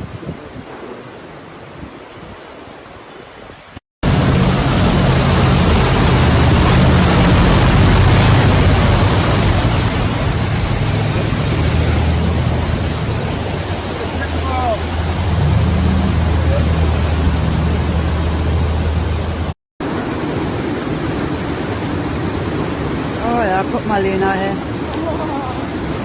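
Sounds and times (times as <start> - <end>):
rushing water: 0.0 - 26.0
vehicle engine droning: 4.0 - 19.5
faint rushing noise: 4.0 - 21.9.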